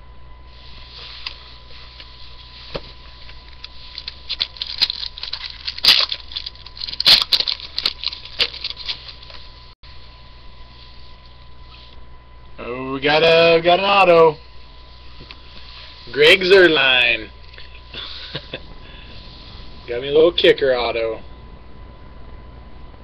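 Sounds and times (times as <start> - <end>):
foil wrapper crinkling and tearing: 2.0 - 9.6.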